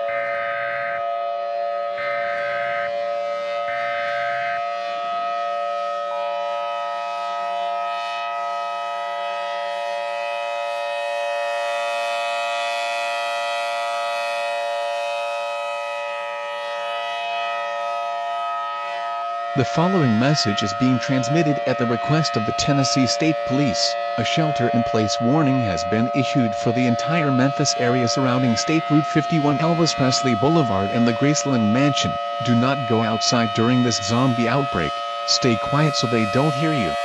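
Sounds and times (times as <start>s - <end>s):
buzzy data bursts: 0.0s - 1.0s, 2.0s - 3.0s, 3.7s - 4.6s
drone of held tones: 0.0s - 37.0s
two-tone attention signal: 2.0s - 4.7s.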